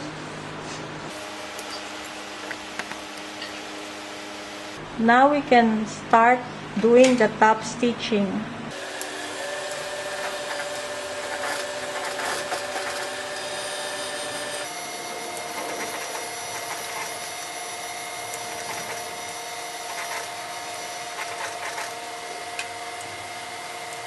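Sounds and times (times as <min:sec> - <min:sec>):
sewing machine motor humming: 0:08.7 - 0:23.2.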